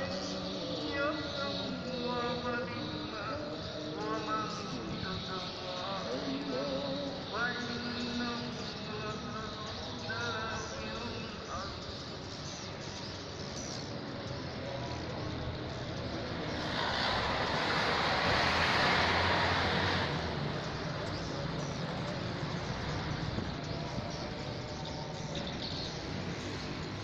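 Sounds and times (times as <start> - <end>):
vehicle passing by: 14.5 - 24.6.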